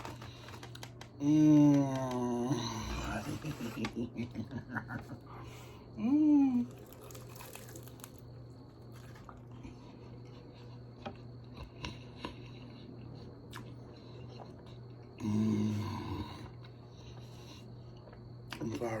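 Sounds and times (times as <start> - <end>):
person humming mmm: 1.2 - 3.9, 15.2 - 16.5
chewing with crunches: 6.6 - 15.2, 16.4 - 18.9.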